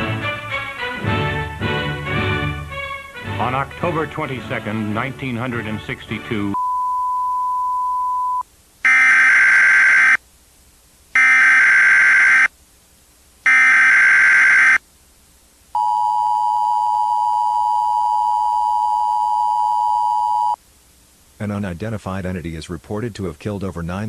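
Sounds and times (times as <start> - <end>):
steady single beep: 6.6 - 9.0
buzzy digital header bursts: 8.8 - 10.2, 11.2 - 12.5, 13.5 - 14.8.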